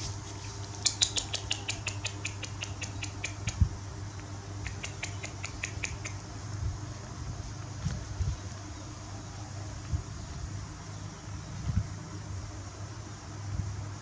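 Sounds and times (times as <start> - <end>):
steady low hum: 0.0 - 14.0
monkey squeaking: 0.8 - 3.6, 4.6 - 6.2.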